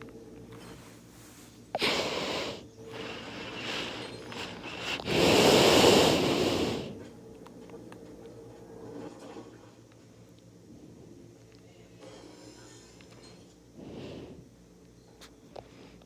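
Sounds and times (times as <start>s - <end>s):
person breathing hard: 0.8s - 7.1s.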